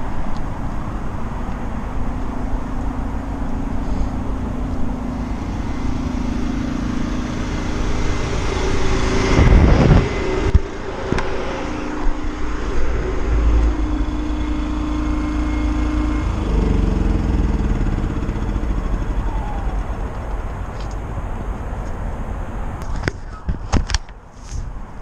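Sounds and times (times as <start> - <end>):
vehicle engine rumbling: 0.0 - 25.0
falling tone: 2.6 - 20.8.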